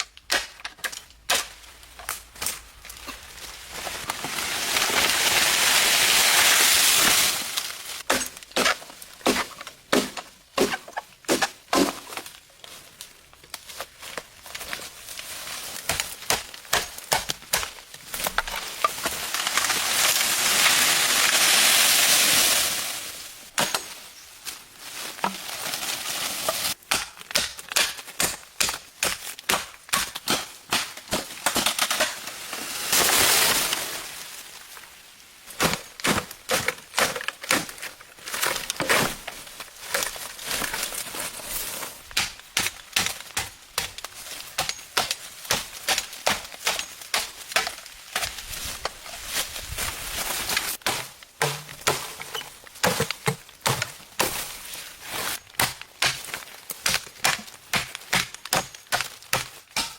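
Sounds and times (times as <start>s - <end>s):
bamboo being chopped: 0.0s - 2.6s, 7.6s - 12.4s, 15.6s - 20.2s, 26.5s - 32.2s, 42.1s - 49.0s, 50.5s - 59.9s.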